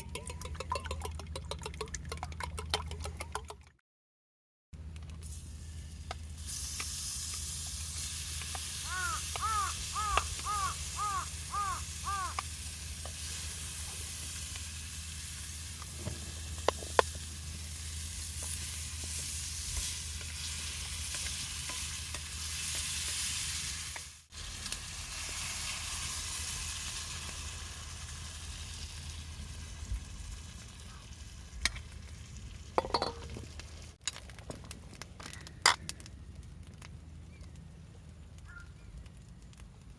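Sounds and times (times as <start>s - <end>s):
food sizzling in a pan: 5.3s - 31.4s
bird calling: 8.8s - 12.4s, 38.4s - 38.9s.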